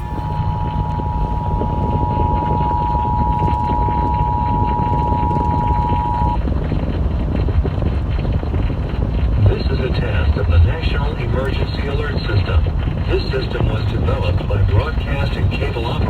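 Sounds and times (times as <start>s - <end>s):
two-tone alert signal: 0.0s - 6.4s
rumbling hiss: 0.0s - 16.0s.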